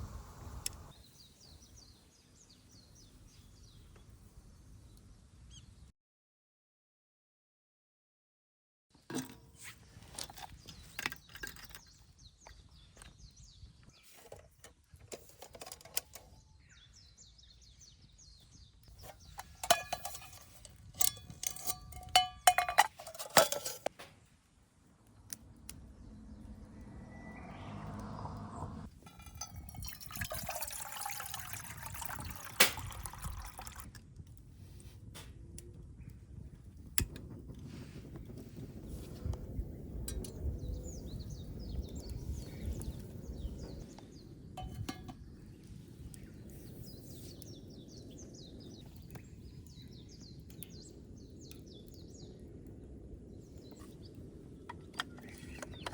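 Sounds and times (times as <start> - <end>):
shells clinking on metal grate: 19.4 - 23.9
wood fire crackling: 32.3 - 43.6.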